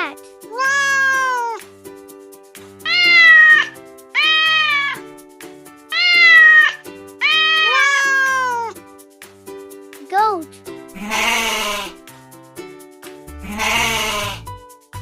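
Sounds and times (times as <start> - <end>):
background music: 0.0 - 15.0
cat meowing: 0.4 - 1.6, 2.9 - 5.0, 5.9 - 8.8, 11.0 - 12.0, 13.4 - 14.4.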